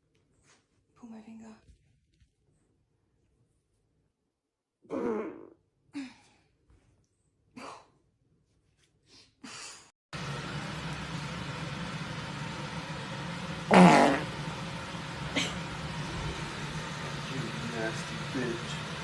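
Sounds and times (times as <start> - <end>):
farts: 4.8 - 5.6, 13.7 - 14.3
steady background hum: 10.2 - 19.0.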